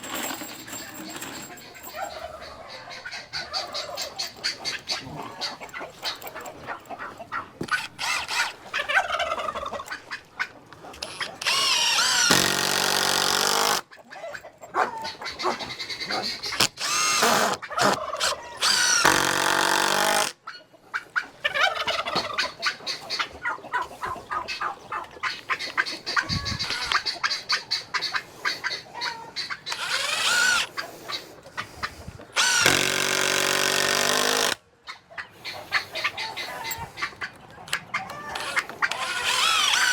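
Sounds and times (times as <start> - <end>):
chickens clucking: 1.4 - 11.4, 13.8 - 16.6, 17.5 - 18.7, 20.4 - 32.4, 34.8 - 39.9.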